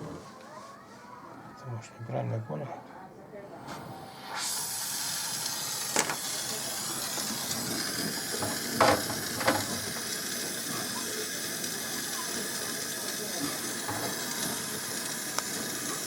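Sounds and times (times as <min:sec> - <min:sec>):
torch flame gas hiss: 0:03.5 - 0:16.0.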